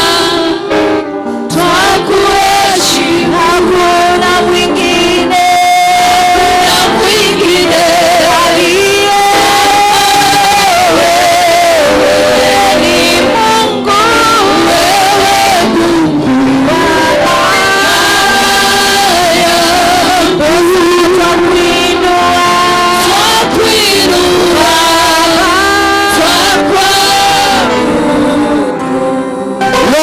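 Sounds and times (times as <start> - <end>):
choir singing worship music: 0.0 - 30.0.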